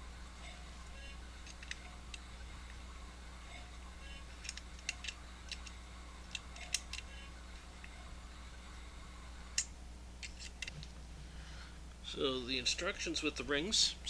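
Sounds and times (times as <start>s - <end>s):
steady low hum: 0.0s - 14.0s
small metal clicks and taps: 4.4s - 7.1s.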